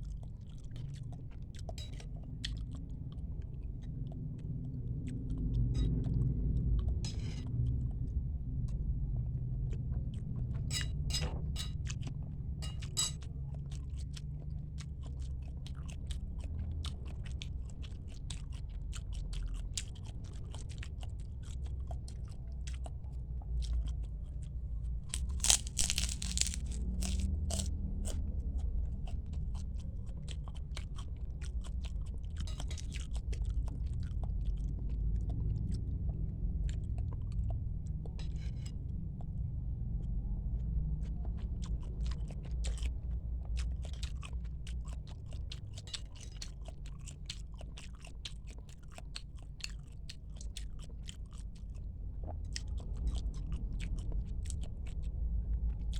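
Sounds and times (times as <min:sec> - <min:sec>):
chewing and biting food: 0:00.0 - 0:55.9
wet mouth clicks: 0:25.2 - 0:27.7.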